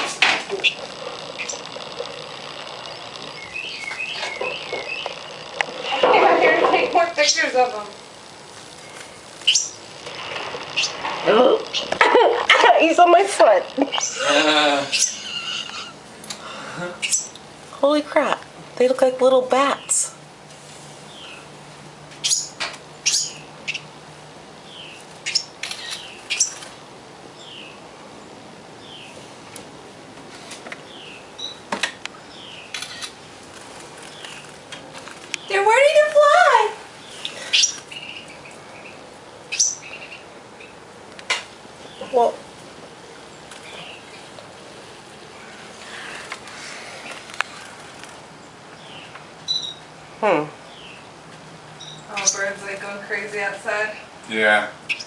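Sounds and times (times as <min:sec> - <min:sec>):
steady background hiss: 0:00.0 - 0:55.0
baby songbirds chirping: 0:00.5 - 0:06.1, 0:06.8 - 0:16.0, 0:16.8 - 0:17.5, 0:19.5 - 0:20.2, 0:21.0 - 0:21.5, 0:22.2 - 0:24.0, 0:24.6 - 0:26.7, 0:27.3 - 0:27.8, 0:28.8 - 0:29.2, 0:30.8 - 0:33.4, 0:34.0 - 0:34.6, 0:35.2 - 0:40.8, 0:41.8 - 0:42.4, 0:43.2 - 0:44.3, 0:48.4 - 0:54.1
soft high bird chirps: 0:02.8 - 0:05.6, 0:08.8 - 0:09.9, 0:10.7 - 0:11.0, 0:37.0 - 0:40.8, 0:48.8 - 0:49.9.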